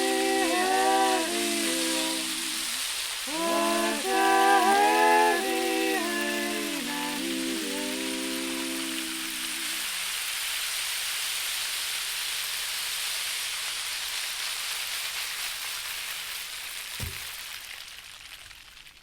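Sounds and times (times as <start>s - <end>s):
held sung chord: 0.0s - 9.9s
heavy rain hiss: 0.0s - 17.4s
short dull thump: 17.0s - 17.3s.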